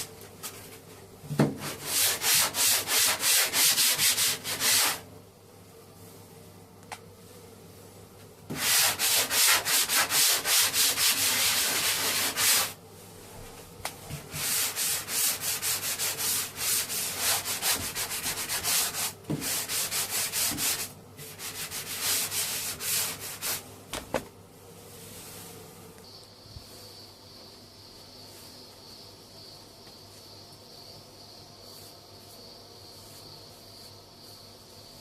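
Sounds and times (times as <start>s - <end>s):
sandpaper scraping plaster: 1.6s - 5.0s, 8.5s - 12.8s, 14.3s - 23.6s.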